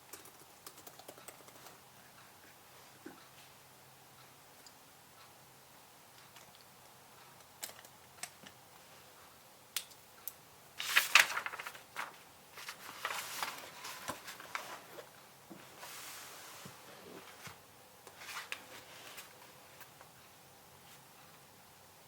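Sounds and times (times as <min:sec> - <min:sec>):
typing on a keyboard: 0:00.0 - 0:01.8, 0:07.5 - 0:08.6.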